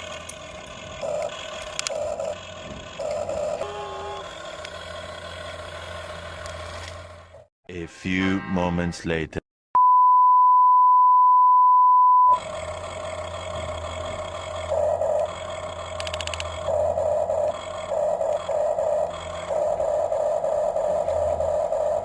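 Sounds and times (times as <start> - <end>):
small electric motors whining: 0.0 - 7.5, 12.3 - 22.0
electronic beep tone: 3.6 - 4.2.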